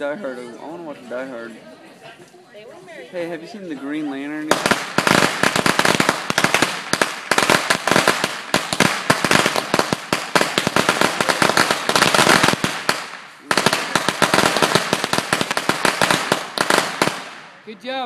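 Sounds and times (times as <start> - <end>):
firecrackers crackling: 4.4 - 18.0.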